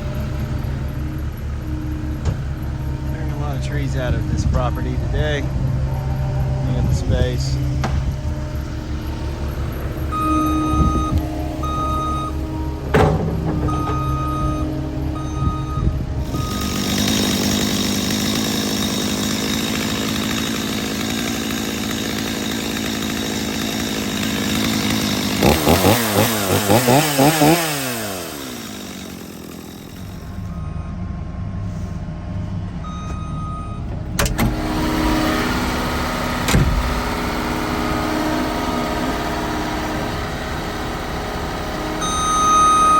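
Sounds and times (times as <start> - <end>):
high-revving excavation machine: 0.0 - 31.1, 32.7 - 42.9
reversing alarm beeping: 8.5 - 21.7, 24.7 - 31.3, 32.8 - 34.3, 42.0 - 42.9.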